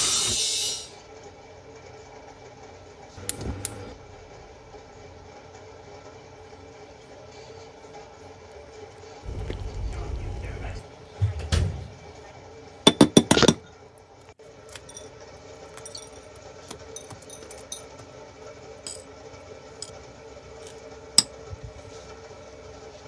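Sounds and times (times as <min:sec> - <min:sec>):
faint steady hum: 0:08.5 - 0:11.0.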